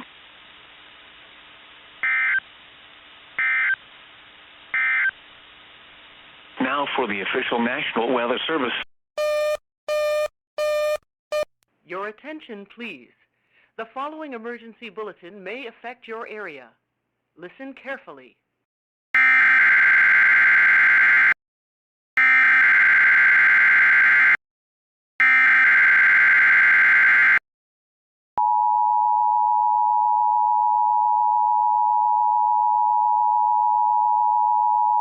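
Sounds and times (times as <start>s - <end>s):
two-tone attention signal: 9.2s - 11.5s.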